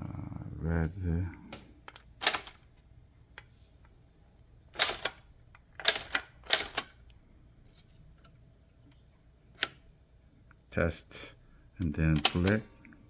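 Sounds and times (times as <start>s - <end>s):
typewriter key strikes: 2.2s - 2.6s, 4.8s - 5.2s, 5.8s - 6.9s, 12.2s - 12.6s.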